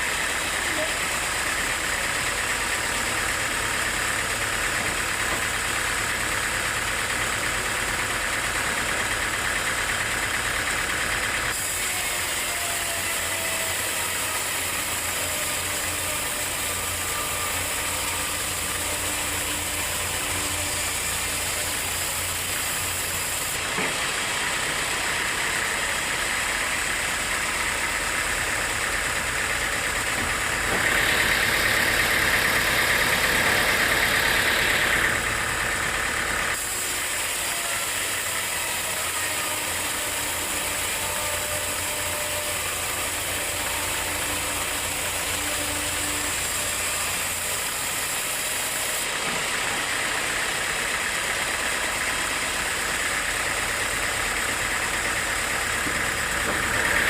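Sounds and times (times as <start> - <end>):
engine hum: 0.0 - 57.0.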